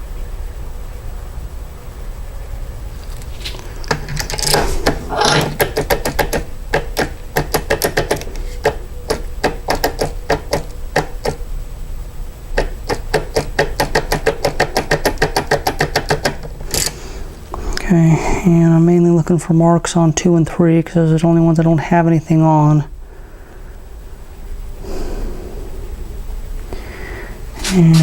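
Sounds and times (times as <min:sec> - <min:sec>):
key clicking in lock: 0:03.9 - 0:11.4.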